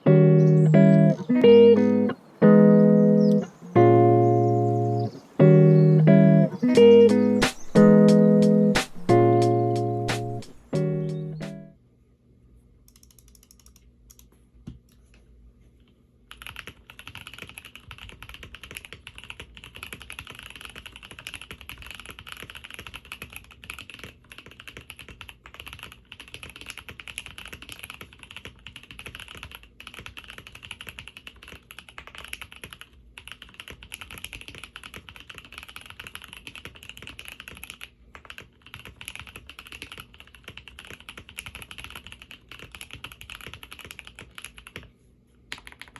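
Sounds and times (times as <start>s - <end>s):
mechanical keyboard typing: 12.9s - 14.3s, 16.3s - 44.9s, 45.5s - 45.9s.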